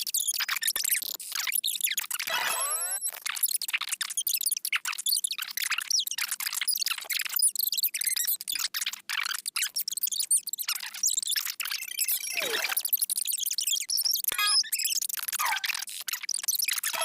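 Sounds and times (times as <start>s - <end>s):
sped-up cartoon cough squeaks: 2.3s - 3.0s, 12.2s - 12.8s.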